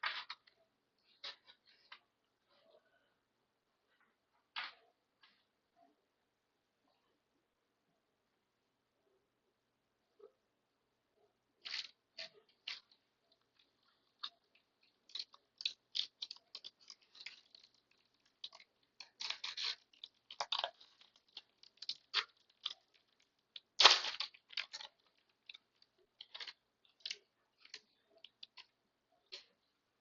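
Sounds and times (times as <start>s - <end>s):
card packaging crackling and rustling: 11.6s - 28.8s.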